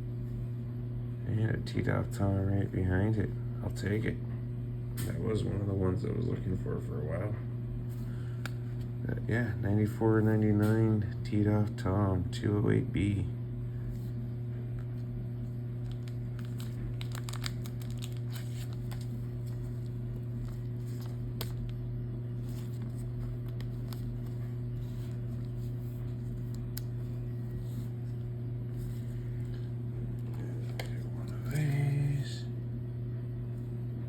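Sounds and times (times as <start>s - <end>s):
steady low hum: 0.0s - 34.0s
plastic wrappers crinkling: 15.4s - 21.8s, 22.4s - 31.8s.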